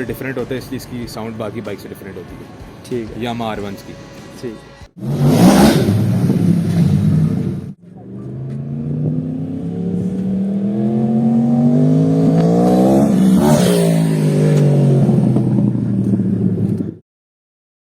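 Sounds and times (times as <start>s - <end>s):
motorcycle engine passing by: 5.0s - 17.0s.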